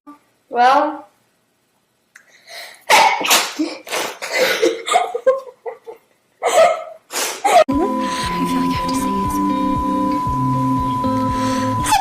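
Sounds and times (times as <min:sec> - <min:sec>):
woman sneezing: 0:02.9 - 0:04.6.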